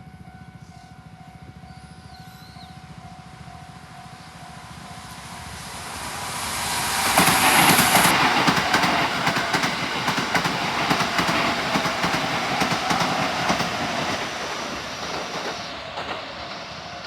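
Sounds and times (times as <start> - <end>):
train wheels clattering over rails: 5.7 - 17.0.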